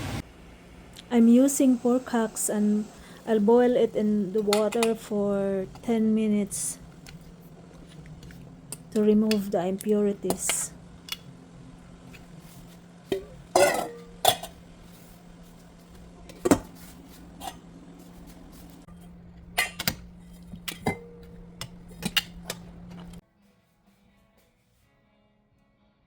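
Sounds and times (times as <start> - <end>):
steady low hum: 0.0 - 23.2
metal pots and utensils clanking: 13.1 - 14.7, 16.2 - 17.7, 18.9 - 23.2.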